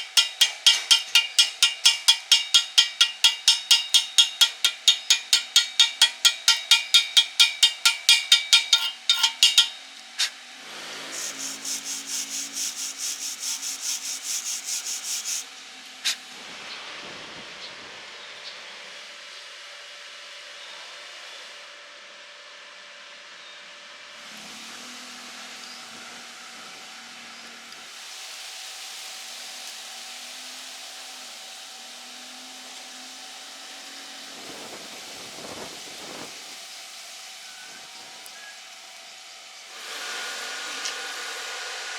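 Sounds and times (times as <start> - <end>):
hammer tapping on steel: 0.0 - 9.8
welding arc crackling: 0.0 - 9.8
wire brush scrubbing metal: 0.0 - 9.8, 11.2 - 15.4.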